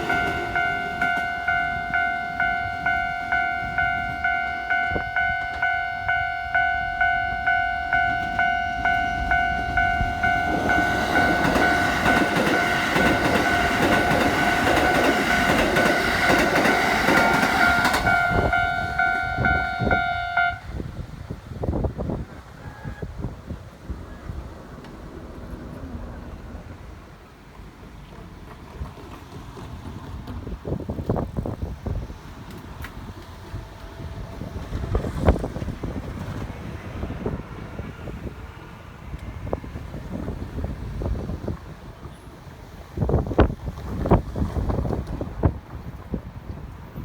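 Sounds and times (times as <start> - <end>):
level-crossing alarm dings: 0.0 - 20.7
train wheels rushing on rail: 0.0 - 47.0.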